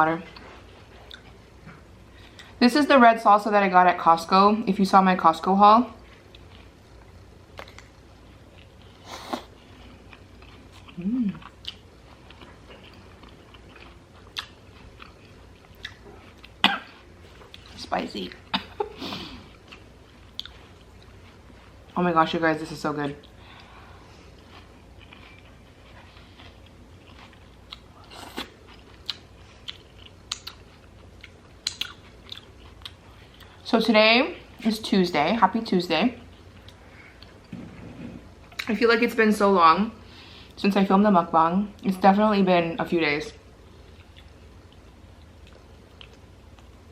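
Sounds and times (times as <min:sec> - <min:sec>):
crunchy chewing and smacking: 0:06.0 - 0:18.5, 0:19.4 - 0:22.0, 0:23.1 - 0:33.6, 0:43.7 - 0:46.9
person humming: 0:11.0 - 0:11.4.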